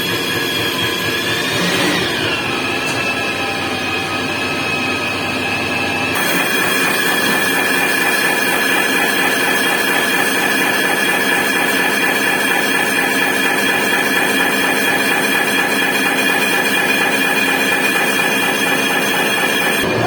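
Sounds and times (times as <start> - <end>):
high-pitched tool squeal: 0.0 - 7.6
lathe cutting metal: 0.0 - 20.0.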